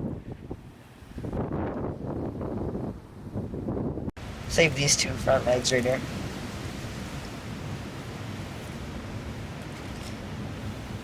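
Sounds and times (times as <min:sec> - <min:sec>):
shoreline rushing: 0:04.2 - 0:11.0.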